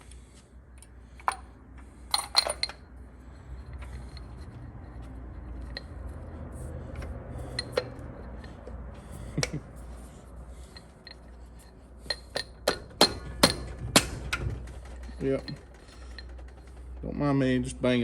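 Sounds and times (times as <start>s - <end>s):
metal parts clicking and tapping: 0.8s - 1.5s, 2.1s - 2.8s, 6.9s - 9.6s, 10.7s - 17.0s.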